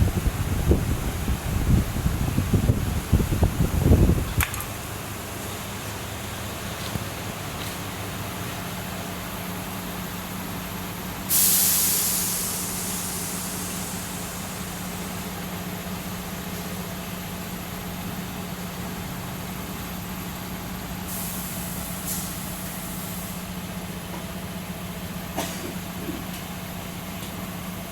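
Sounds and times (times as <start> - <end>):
loud hiss: 11.2 - 15.6, 21.1 - 23.5.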